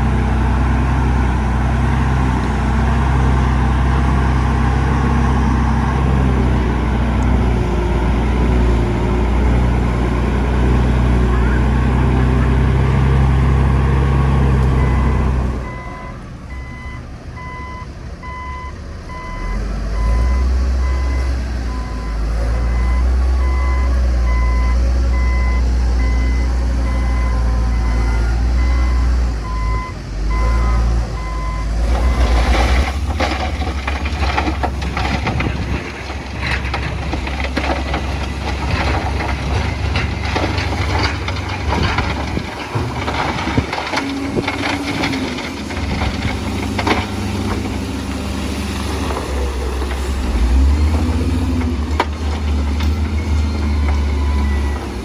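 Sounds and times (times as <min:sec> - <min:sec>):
diesel truck engine drone: 0:00.0 - 0:55.0
reversing alarm beeping: 0:14.8 - 0:31.7
irregular clatter of knocks: 0:31.9 - 0:48.1.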